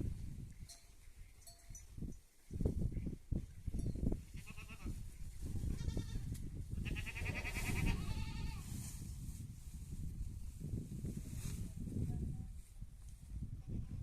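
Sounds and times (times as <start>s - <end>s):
goats bleating: 6.9s - 8.6s.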